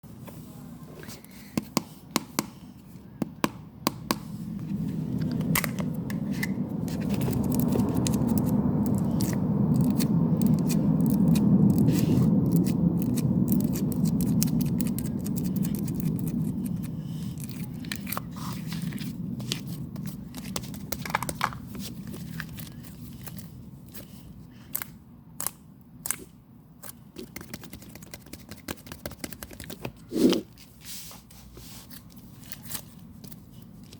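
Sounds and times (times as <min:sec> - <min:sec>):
low rushing noise: 0:04.2 - 0:20.6.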